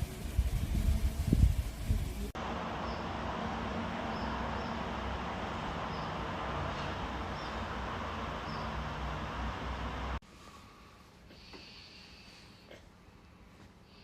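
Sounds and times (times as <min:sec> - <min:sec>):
ceiling fan running: 0:00.0 - 0:11.1.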